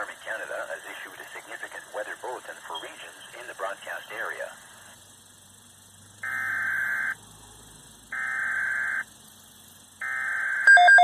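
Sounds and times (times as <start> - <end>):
digital data bursts: 0.0 - 5.0, 6.2 - 7.2, 8.1 - 9.2, 10.0 - 11.0.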